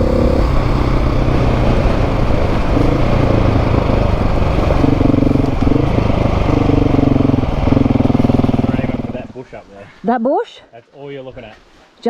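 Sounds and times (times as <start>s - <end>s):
dirt bike engine revving: 0.0s - 9.4s.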